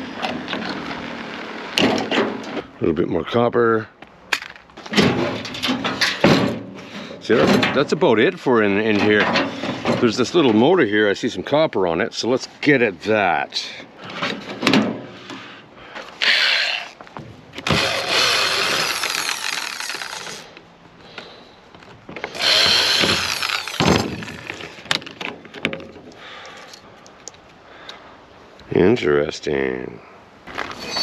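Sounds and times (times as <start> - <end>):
handheld power tool running: 17.6 - 20.4, 22.3 - 24.6.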